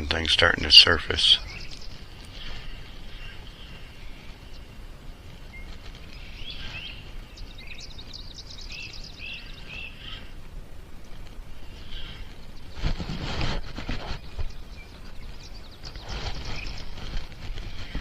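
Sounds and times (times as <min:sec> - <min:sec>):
birds singing: 0:00.0 - 0:18.0
low outdoor background noise: 0:00.0 - 0:18.0.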